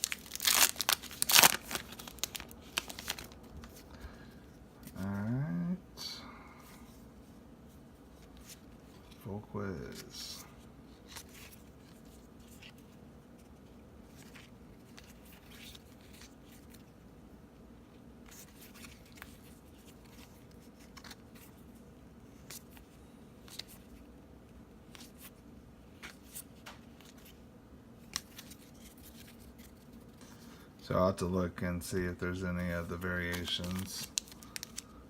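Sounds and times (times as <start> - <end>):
trading cards flipping and rustling: 0.0 - 4.1, 8.0 - 16.9, 18.3 - 24.1, 24.8 - 27.4, 28.0 - 30.5, 32.0 - 35.0
low room hum: 0.0 - 35.0.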